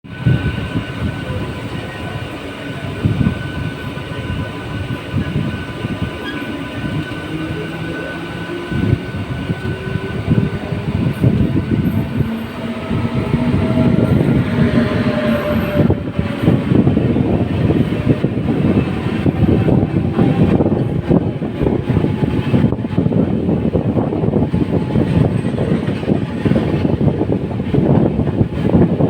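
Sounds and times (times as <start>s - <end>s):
train coaches rumbling: 0.0s - 29.0s.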